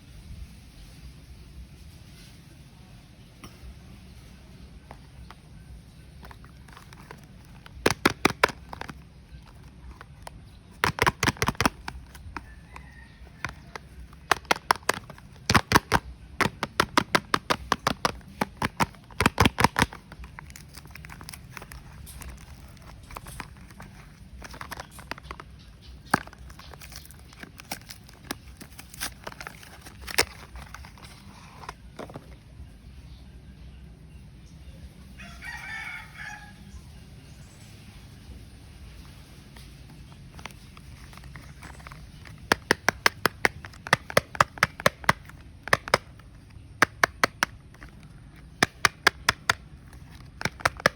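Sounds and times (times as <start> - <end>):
packaging being torn and crinkled: 6.2 - 32.2.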